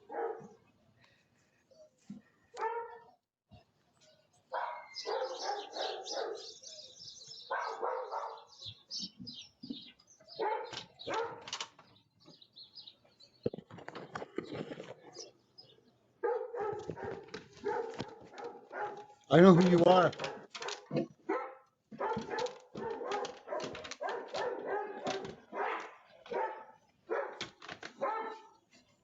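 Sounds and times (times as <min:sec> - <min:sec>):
dog barking rapidly: 0:00.0 - 0:00.6, 0:02.6 - 0:03.0, 0:04.6 - 0:06.6, 0:07.5 - 0:08.5, 0:10.4 - 0:11.6, 0:16.2 - 0:28.6.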